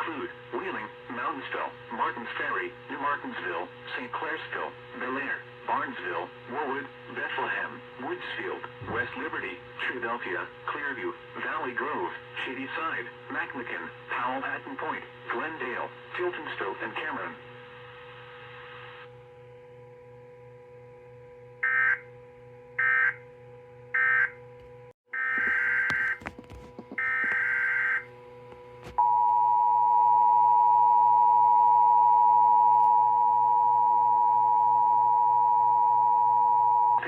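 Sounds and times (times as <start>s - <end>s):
low steady hum: 19.1s - 37.0s.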